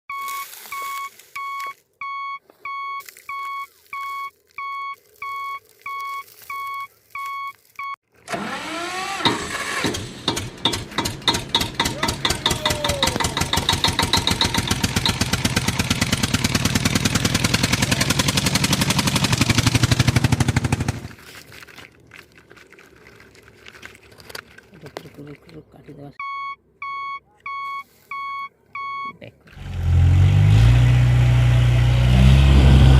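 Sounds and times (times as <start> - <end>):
electronic beep: 0.1 - 8.0, 26.2 - 29.2
engine starting and chugging: 8.2 - 21.2.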